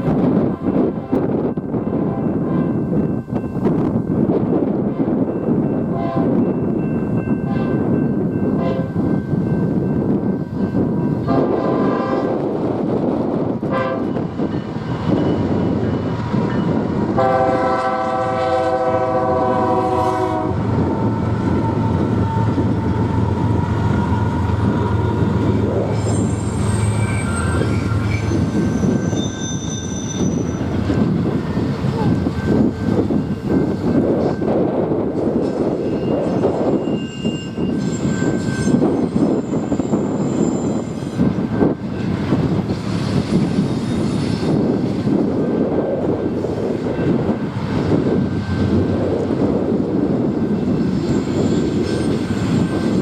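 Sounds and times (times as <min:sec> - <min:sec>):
train passing: 0:00.0 - 0:53.0
train air horn blasts: 0:05.9 - 0:06.4, 0:08.6 - 0:08.9, 0:11.3 - 0:12.4, 0:13.7 - 0:14.2, 0:17.1 - 0:20.7
faint high squeals: 0:25.8 - 0:30.8, 0:36.0 - 0:41.3.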